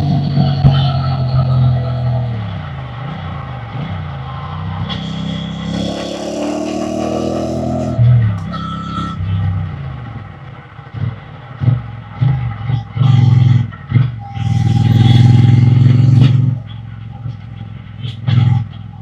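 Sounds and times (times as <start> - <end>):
motorcycle engine revving: 0.0 - 9.8, 12.2 - 17.0.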